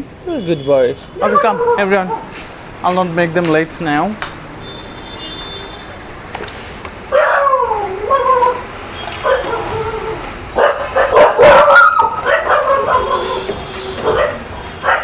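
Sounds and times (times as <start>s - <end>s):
dog whining and yipping: 7.1s - 10.2s, 11.0s - 15.0s.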